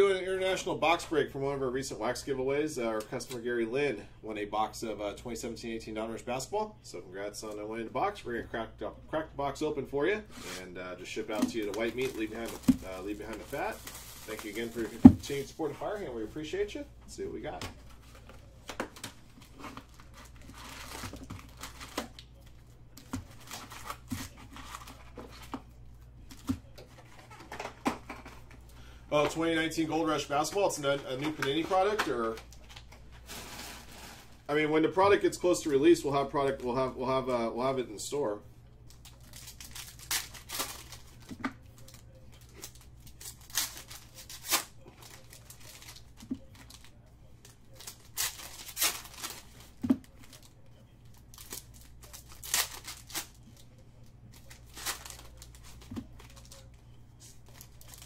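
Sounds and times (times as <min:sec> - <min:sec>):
faint low hum: 0:00.0 - 0:58.0
plastic wrap tearing and crinkling: 0:11.3 - 0:16.5, 0:17.8 - 0:25.6, 0:30.3 - 0:34.5, 0:38.9 - 0:56.7, 0:57.3 - 0:58.0.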